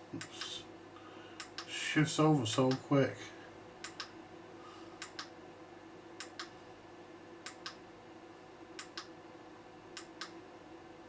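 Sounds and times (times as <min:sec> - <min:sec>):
steady low hum: 0:00.0 - 0:11.0
sharp clicks: 0:01.4 - 0:01.7, 0:03.8 - 0:04.1, 0:05.0 - 0:05.3, 0:06.2 - 0:06.5, 0:08.8 - 0:09.1.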